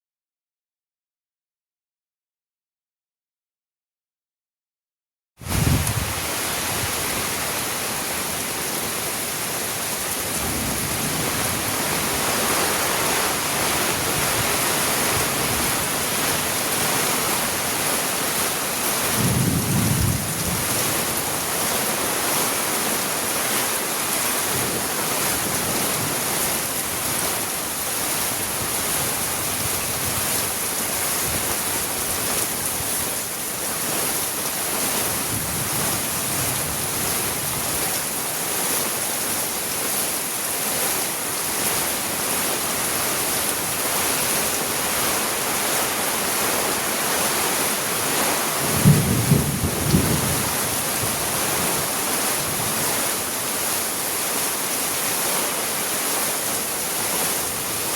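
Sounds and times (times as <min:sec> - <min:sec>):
heavy rain hissing: 0:05.4 - 0:35.2.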